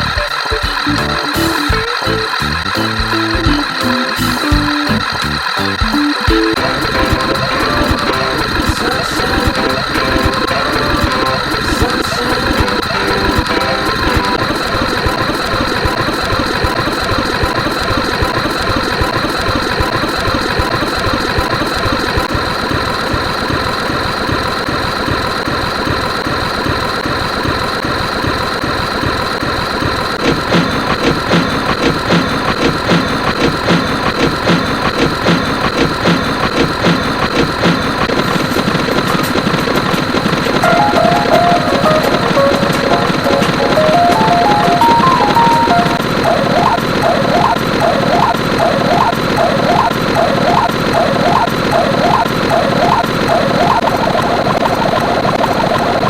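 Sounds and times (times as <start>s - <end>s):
steady electronic tones: 0.0s - 15.4s, 40.6s - 54.4s
fast pulsing: 0.0s - 56.0s
rapid engine-like chugging: 0.0s - 56.0s.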